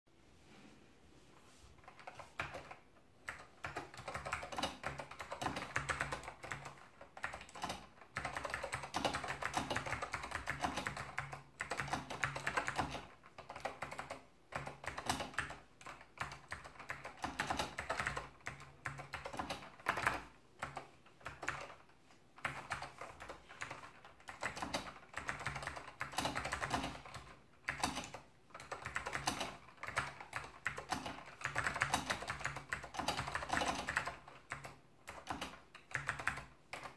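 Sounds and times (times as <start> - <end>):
clicky keyboard typing: 1.8 - 36.9.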